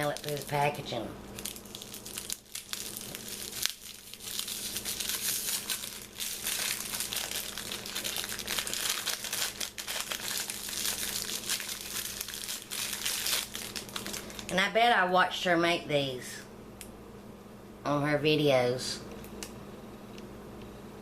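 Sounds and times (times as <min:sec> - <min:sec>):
plastic bag crinkling: 0:00.0 - 0:14.8.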